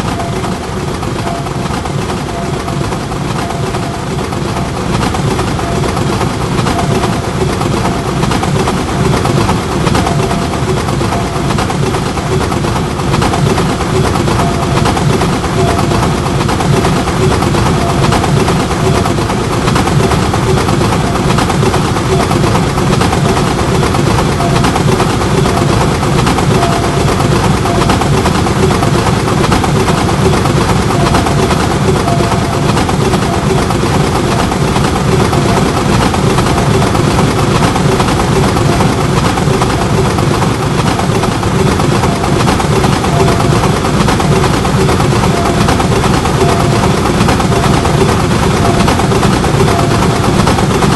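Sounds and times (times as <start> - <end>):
train rumbling past: 0.0 - 50.9.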